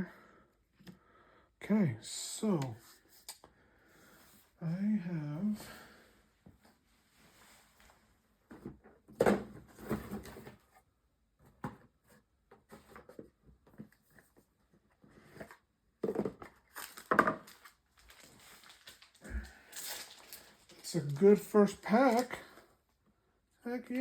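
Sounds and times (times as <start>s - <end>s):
trading cards rustling and tapping: 16.0s - 22.5s.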